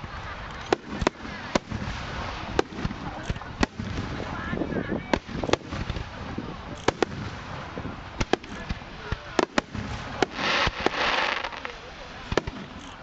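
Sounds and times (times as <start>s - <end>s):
dense firework crackle: 0.0s - 13.0s
firework shells bursting: 6.7s - 13.0s.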